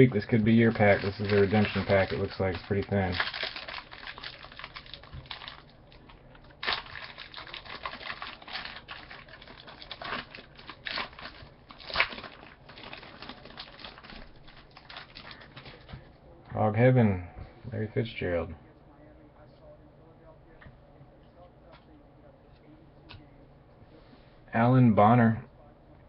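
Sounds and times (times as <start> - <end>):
card pack crinkling: 0.0 - 16.0.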